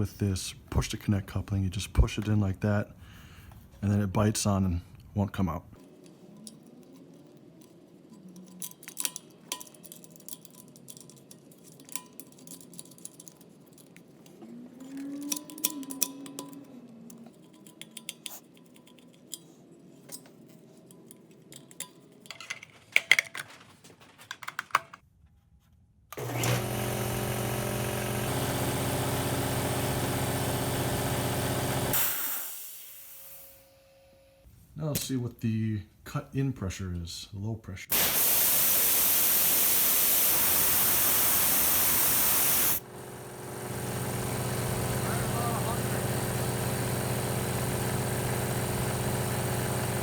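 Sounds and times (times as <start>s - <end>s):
metal tools clinking: 5.8s - 25.0s
air compressor running: 26.2s - 33.6s, 37.9s - 50.0s.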